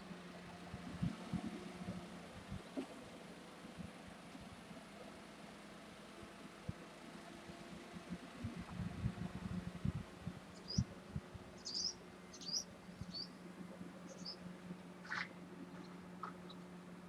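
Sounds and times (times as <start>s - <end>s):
low electrical hum: 0.0s - 17.0s
small bird chirping: 10.6s - 10.9s, 11.6s - 13.4s, 14.1s - 14.4s.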